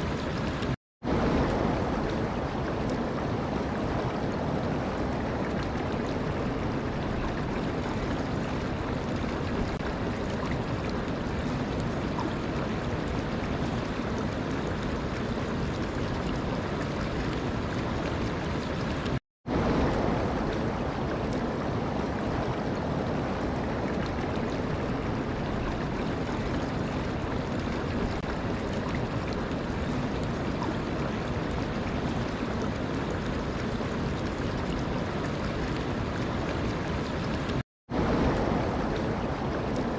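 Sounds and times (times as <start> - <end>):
flowing water: 0.0 - 39.9.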